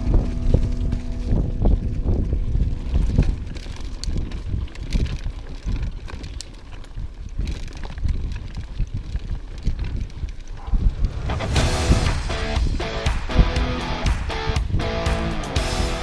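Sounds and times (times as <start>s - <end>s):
bike rattling over bumps: 0.0s - 16.0s
bike tyre and frame rumble: 0.0s - 16.0s
wind buffeting microphone: 0.0s - 16.0s.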